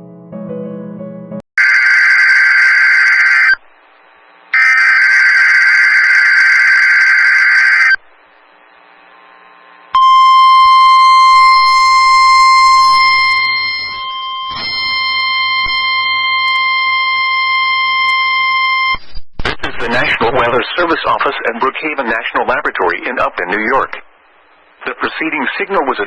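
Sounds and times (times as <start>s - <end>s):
screechy digital data burst: 1.6s - 3.6s, 4.6s - 8.0s
steady high alarm beep: 1.6s - 3.6s, 4.6s - 8.0s, 10.0s - 18.8s.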